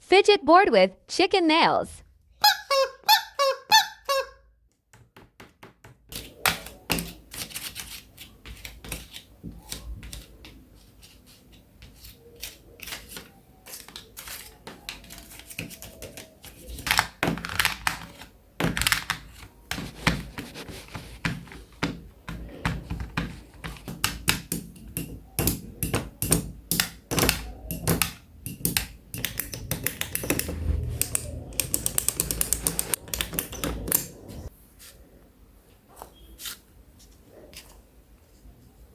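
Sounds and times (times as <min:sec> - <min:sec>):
squeaky pitched notes: 0:02.4 - 0:04.4
fidget toy clicks and snaps: 0:26.2 - 0:34.1.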